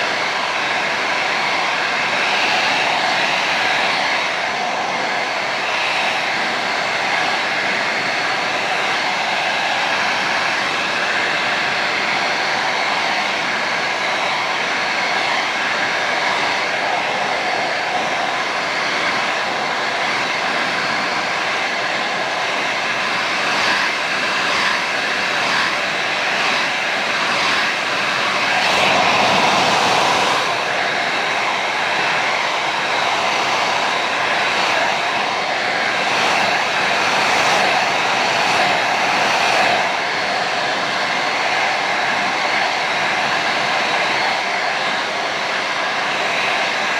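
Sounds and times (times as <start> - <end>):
hair dryer running: 0.0 - 46.9.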